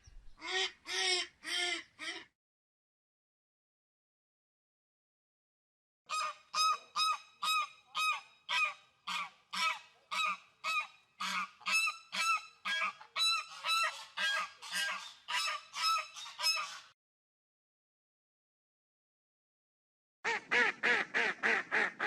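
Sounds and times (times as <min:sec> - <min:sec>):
goose honking: 0:06.1 - 0:16.9.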